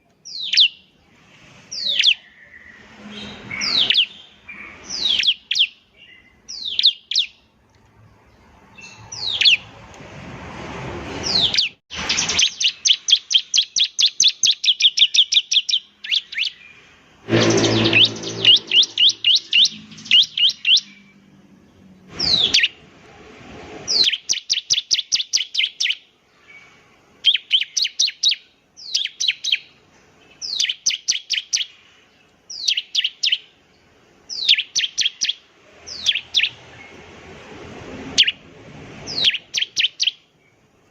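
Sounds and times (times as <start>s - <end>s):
bird song of high chips: 0.0s - 9.8s, 11.2s - 22.8s, 23.9s - 37.2s, 38.1s - 38.4s, 39.0s - 40.8s
brief low noisy sound: 17.3s - 19.4s.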